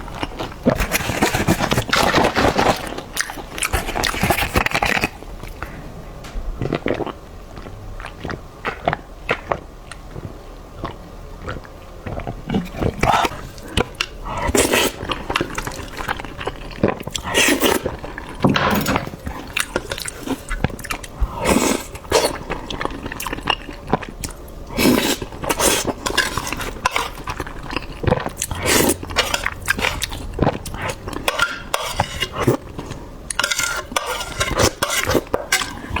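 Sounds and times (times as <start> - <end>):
biting and chewing: 0.0 - 36.0
utensils clinking on a dish: 30.8 - 36.0.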